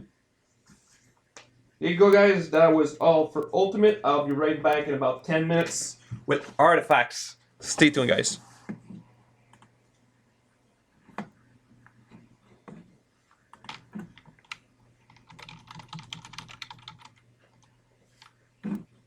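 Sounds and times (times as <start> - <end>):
typing on computer keyboard: 13.5 - 18.3.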